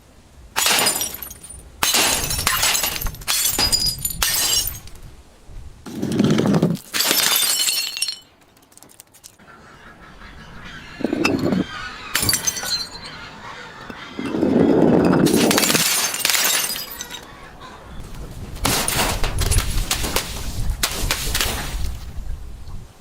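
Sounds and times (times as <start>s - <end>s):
glass breaking and crunching: 0.6s - 5.0s, 6.0s - 9.4s, 12.2s - 13.1s, 15.2s - 17.3s, 18.6s - 21.7s.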